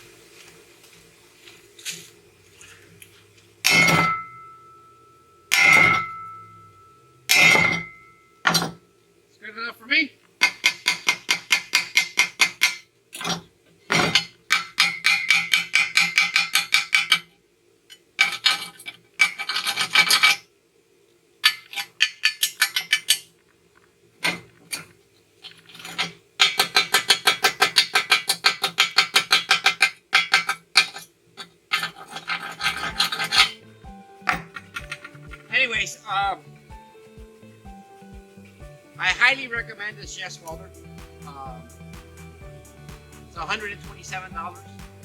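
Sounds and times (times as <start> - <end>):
scraping slag off weld: 18.2 - 20.5, 24.2 - 33.6.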